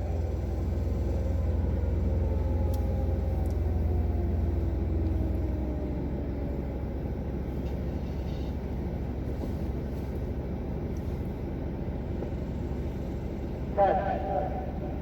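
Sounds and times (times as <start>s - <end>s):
distant warning siren winding down: 0.0s - 7.5s
steady low rumble: 0.0s - 15.0s.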